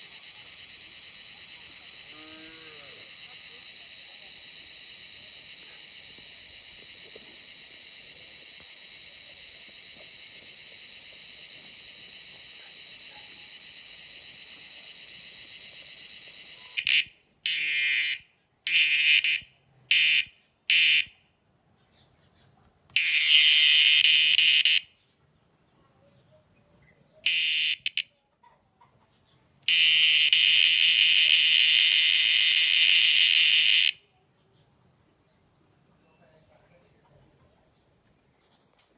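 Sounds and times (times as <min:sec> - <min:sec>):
insect shrill buzzing call: 0:00.0 - 0:21.1, 0:23.0 - 0:24.9, 0:27.2 - 0:28.0, 0:29.6 - 0:34.0.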